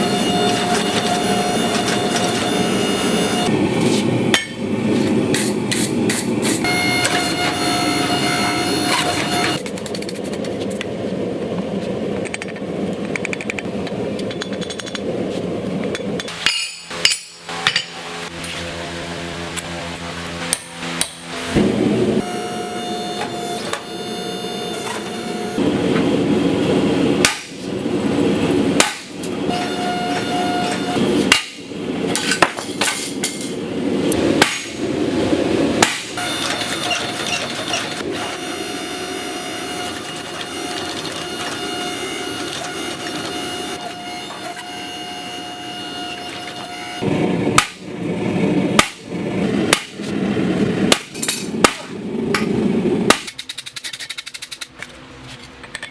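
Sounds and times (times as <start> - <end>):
steady rushing noise: 31.0 - 36.2, 47.0 - 53.3.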